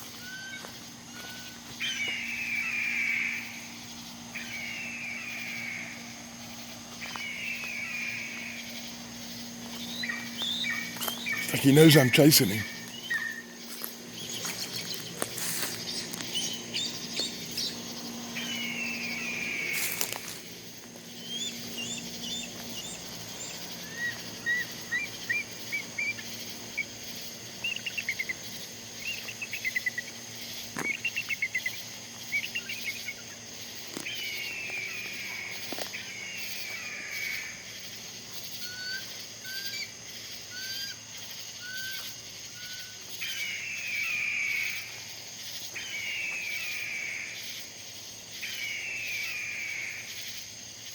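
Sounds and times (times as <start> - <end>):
harsh falling bird calls: 0.0 - 50.2
insect chirring: 0.0 - 50.9
rapid bird chattering: 7.0 - 20.1, 21.0 - 33.4.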